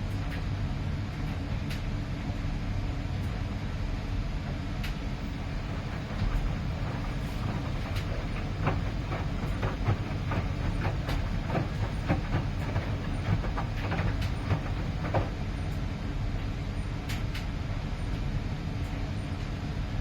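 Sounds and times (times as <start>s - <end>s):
washing machine drum rumbling: 5.0s - 15.4s
load knocking in drum: 5.6s - 15.4s.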